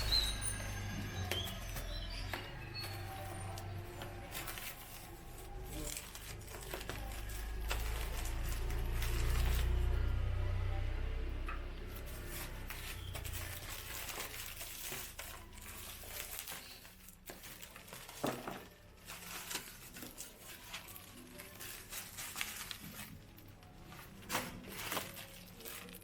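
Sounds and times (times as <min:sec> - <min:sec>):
packaging rustling: 0:00.0 - 0:10.4, 0:11.9 - 0:26.0
low hum: 0:00.0 - 0:14.4.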